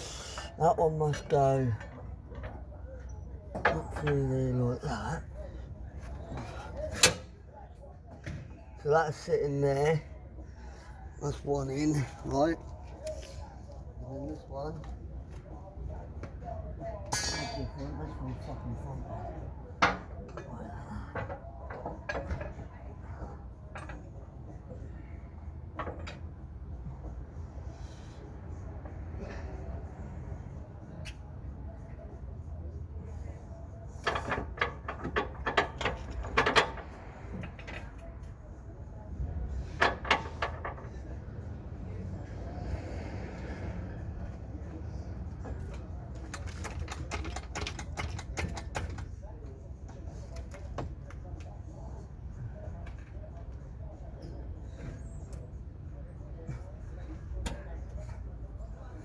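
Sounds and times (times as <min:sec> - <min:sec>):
metal parts clicking and knocking: 0:46.1 - 0:49.1.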